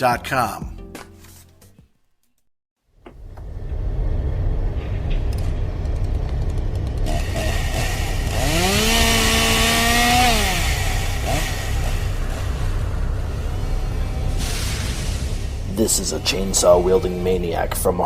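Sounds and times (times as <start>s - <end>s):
chainsaw engine revving: 7.0s - 17.2s.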